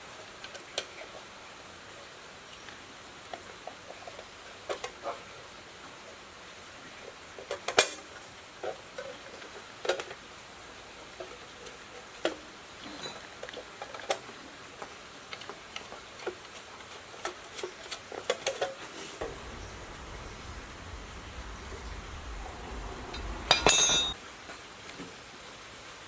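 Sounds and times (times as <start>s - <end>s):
ringing metallic clatter: 19.2s - 24.2s
light metallic clinks and taps: 23.1s - 24.2s.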